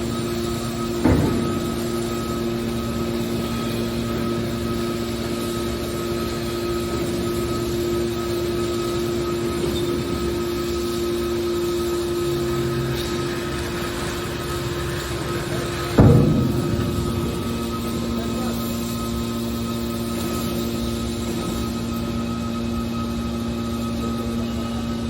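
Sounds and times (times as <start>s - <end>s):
hydraulic baler motor humming: 0.0s - 25.0s
sharp knock: 16.0s - 19.0s.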